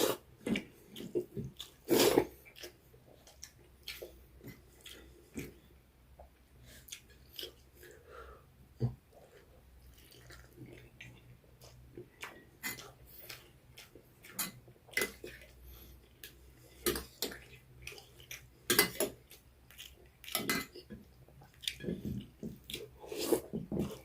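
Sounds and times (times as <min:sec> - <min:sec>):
dishes and utensils clinking: 0:20.3 - 0:20.8.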